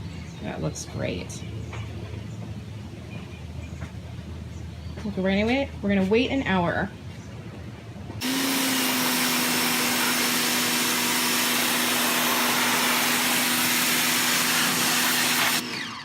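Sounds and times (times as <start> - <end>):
power tool motor running: 8.2 - 16.0.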